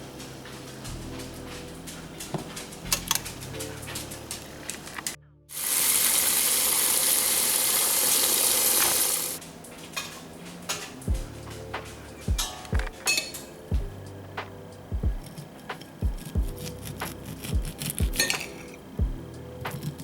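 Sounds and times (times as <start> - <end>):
background music: 0.0 - 20.0
kitchen clicks and clatter: 0.1 - 5.2, 8.8 - 13.7, 16.9 - 18.9
loud steady hiss: 4.8 - 9.4.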